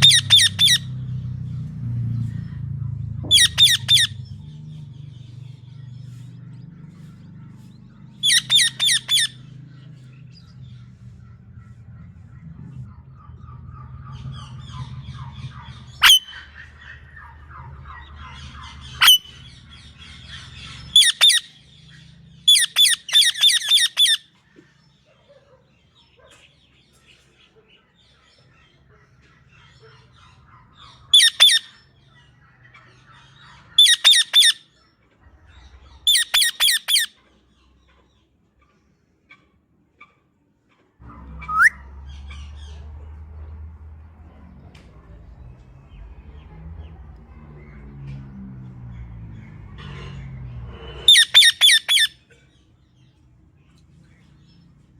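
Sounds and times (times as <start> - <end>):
low hum: 0.0 - 18.8
parrot chattering softly: 3.2 - 4.2, 8.2 - 9.4
parrot screeching: 3.3 - 4.2, 8.2 - 9.4, 41.4 - 41.8, 51.1 - 52.2.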